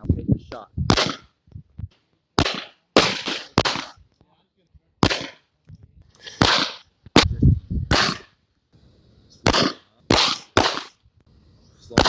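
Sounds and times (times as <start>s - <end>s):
pistol shots with echo: 0.9s - 1.3s, 2.4s - 4.0s, 5.0s - 5.5s, 6.2s - 8.4s, 9.3s - 11.0s.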